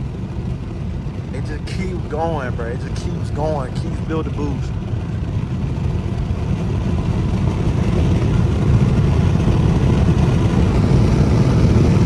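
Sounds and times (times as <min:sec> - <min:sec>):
car engine accelerating: 0:01.0 - 0:12.0.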